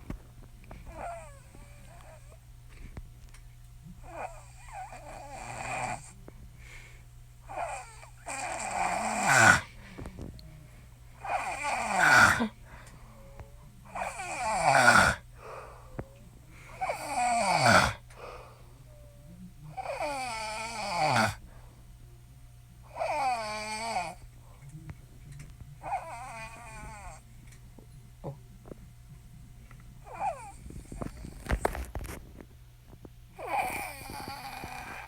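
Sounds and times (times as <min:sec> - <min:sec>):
woman snoring: 0:00.9 - 0:02.4, 0:04.0 - 0:06.2, 0:07.5 - 0:10.1, 0:11.2 - 0:12.8, 0:13.8 - 0:16.0, 0:16.7 - 0:18.5, 0:19.7 - 0:21.4, 0:22.9 - 0:24.2, 0:25.8 - 0:27.2, 0:30.0 - 0:31.6, 0:33.4 - 0:35.0.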